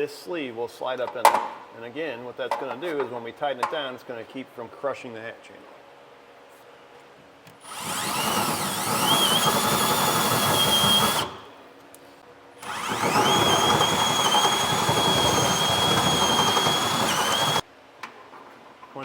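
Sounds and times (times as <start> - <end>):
power drill cutting metal: 7.6 - 11.5, 12.6 - 17.6.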